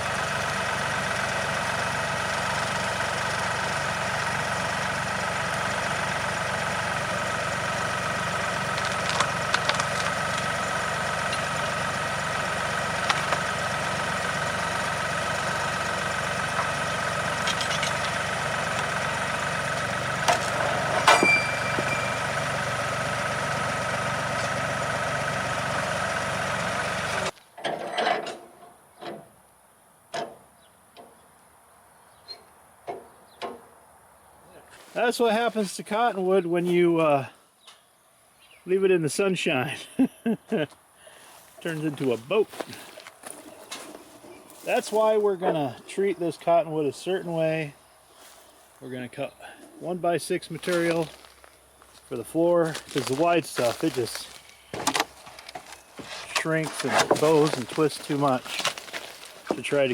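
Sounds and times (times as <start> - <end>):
sawmill engine running: 0.0 - 27.4, 41.1 - 59.9.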